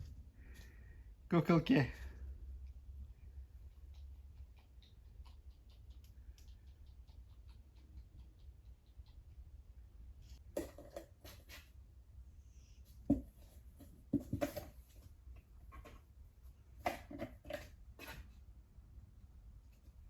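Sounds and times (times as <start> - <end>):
kitten scratching cardboard: 10.3 - 11.8, 12.8 - 18.6.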